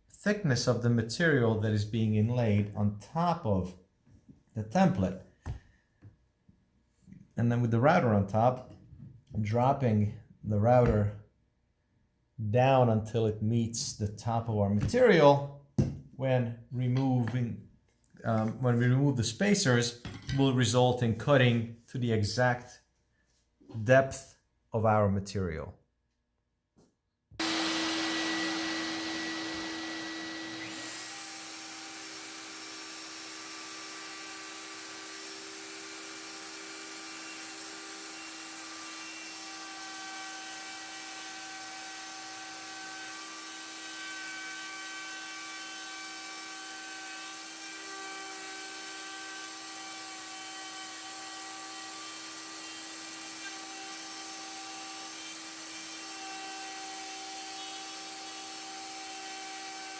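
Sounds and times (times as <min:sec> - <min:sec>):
router whining: 0:27.4 - 0:59.9.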